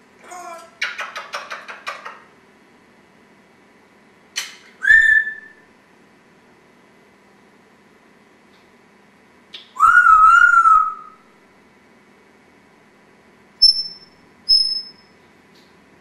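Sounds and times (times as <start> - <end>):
parrot whistling: 4.8 - 5.6, 9.6 - 11.2, 13.6 - 15.0.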